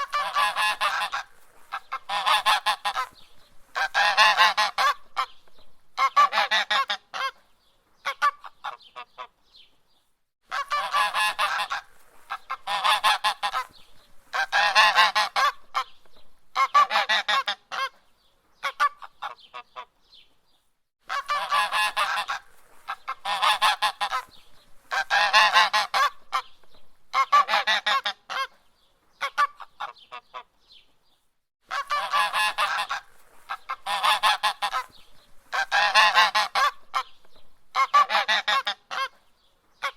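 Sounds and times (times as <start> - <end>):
goose honking: 0.0 - 5.3, 6.0 - 7.4, 10.5 - 13.7, 14.3 - 15.9, 16.6 - 17.9, 21.1 - 24.3, 24.9 - 26.5, 27.1 - 28.5, 31.7 - 37.1, 37.7 - 39.1.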